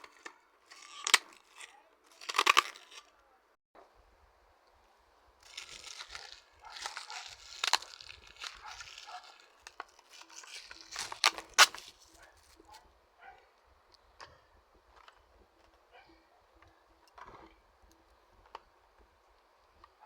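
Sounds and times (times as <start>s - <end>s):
packaging crinkling and tearing: 0.0s - 3.1s, 5.4s - 12.8s.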